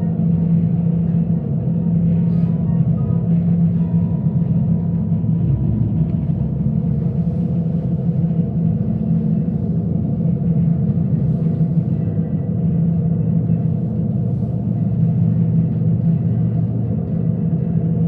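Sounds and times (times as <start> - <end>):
engine droning: 0.0 - 18.0.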